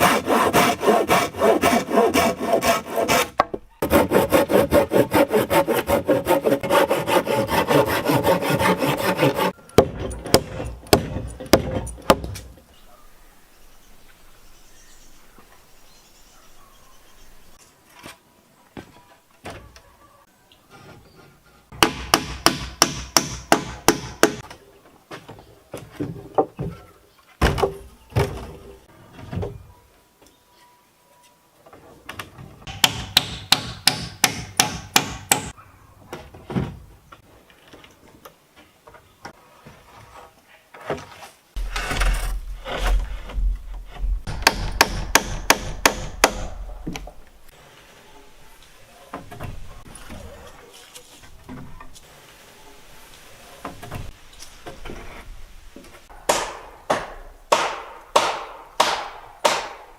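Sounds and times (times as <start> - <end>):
hammer striking wood: 7.6 - 12.4, 21.7 - 24.5, 32.7 - 35.5, 44.2 - 47.1, 56.3 - 59.9.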